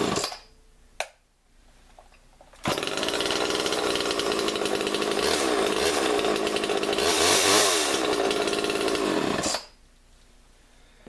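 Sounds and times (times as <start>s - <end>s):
chainsaw revving: 0.0s - 0.3s, 2.6s - 9.8s.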